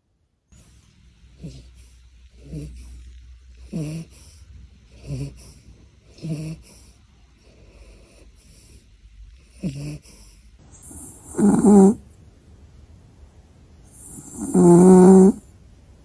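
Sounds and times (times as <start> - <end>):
dog snoring: 1.4 - 12.1, 13.9 - 15.5.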